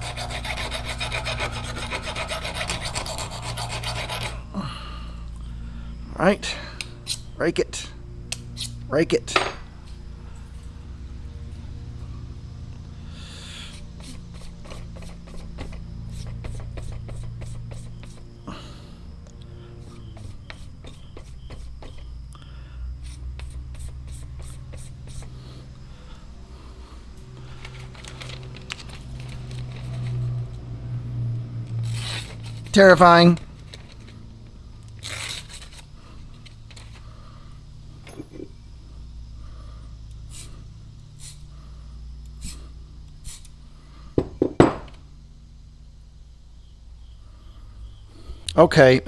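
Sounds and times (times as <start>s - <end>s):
blade scraping on sharpener: 0.0s - 4.5s, 7.0s - 7.4s, 8.3s - 8.8s, 13.6s - 18.3s, 19.8s - 22.1s, 23.0s - 25.4s, 31.7s - 33.0s, 35.0s - 35.9s
low steady hum: 0.0s - 49.0s.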